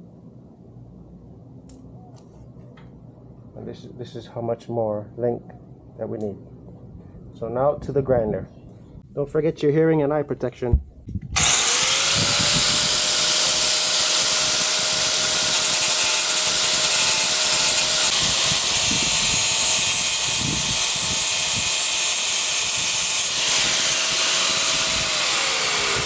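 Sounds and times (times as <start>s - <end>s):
angle grinder grinding metal: 11.4s - 26.0s.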